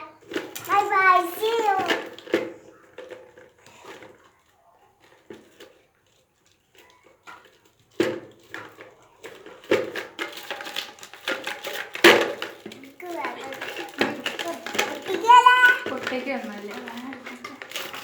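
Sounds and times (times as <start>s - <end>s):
sharp knocks and clatter: 7.2s - 18.0s.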